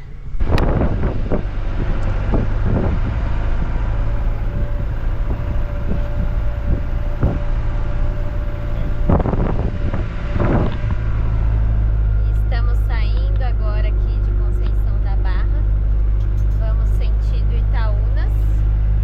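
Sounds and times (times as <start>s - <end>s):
faint steady whine: 0.0s - 19.0s
vehicle engine rumbling: 0.0s - 19.0s.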